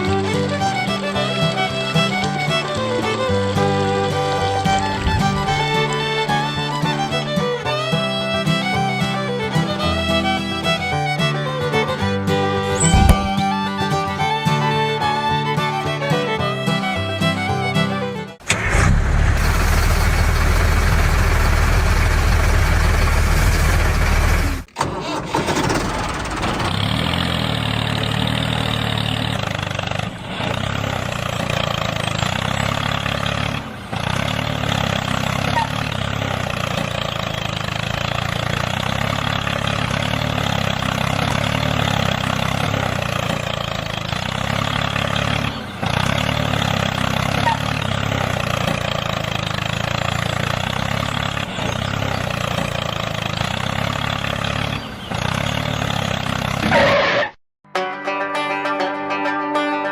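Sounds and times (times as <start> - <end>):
small engine running: 0.0 - 56.9.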